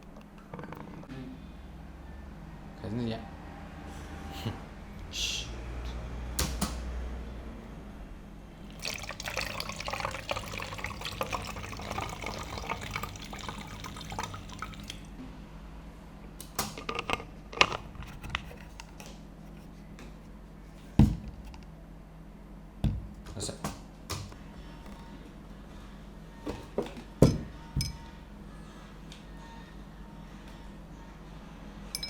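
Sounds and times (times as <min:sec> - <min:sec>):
liquid pouring and splashing: 0:08.7 - 0:15.1.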